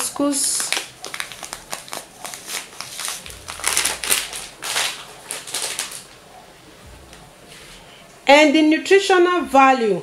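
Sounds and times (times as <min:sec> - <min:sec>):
food packet crinkling: 0:00.3 - 0:06.2.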